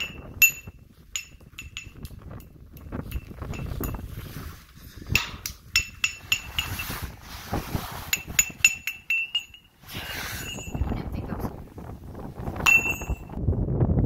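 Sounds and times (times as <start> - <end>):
metallic clinks and taps: 0.0 - 4.0, 5.1 - 6.8, 8.2 - 9.7, 12.6 - 13.3.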